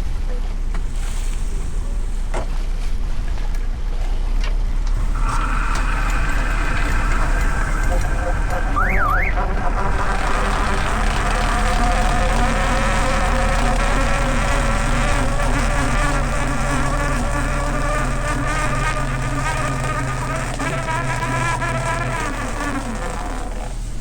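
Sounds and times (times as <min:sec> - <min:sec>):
motor buzzing hum: 0:05.0 - 0:24.0.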